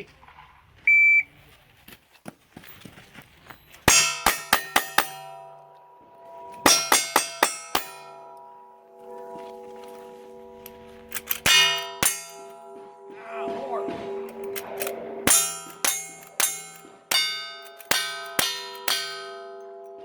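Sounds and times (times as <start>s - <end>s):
steel plates ringing: 3.7s - 20.0s
steel targets clanging: 3.7s - 20.0s.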